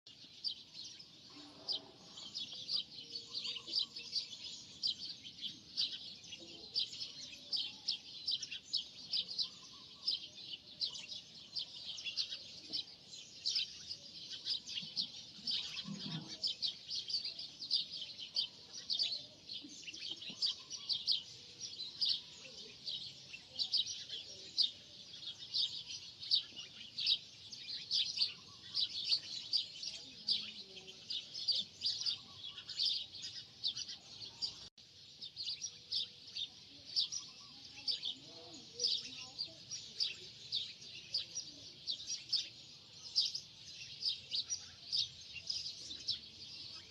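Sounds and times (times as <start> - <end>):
small birds chirping: 0.0 - 46.9.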